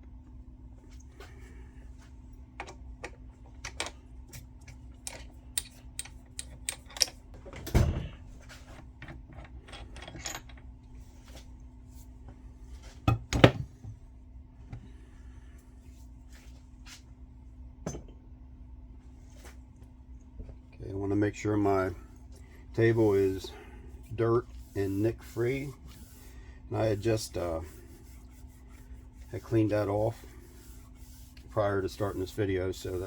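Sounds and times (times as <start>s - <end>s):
faint steady hum: 0.0s - 33.0s.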